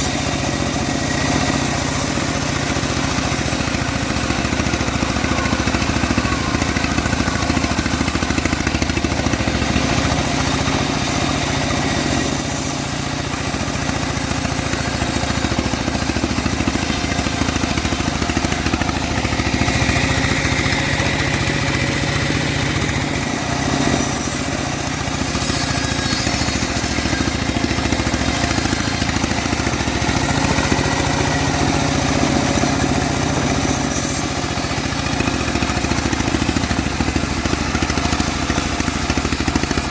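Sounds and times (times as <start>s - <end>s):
engine-driven bandsaw mill running: 0.0s - 39.9s.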